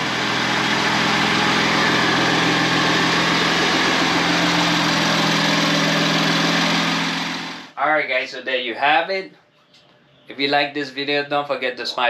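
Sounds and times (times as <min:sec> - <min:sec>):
car engine idling: 0:00.0 - 0:07.8.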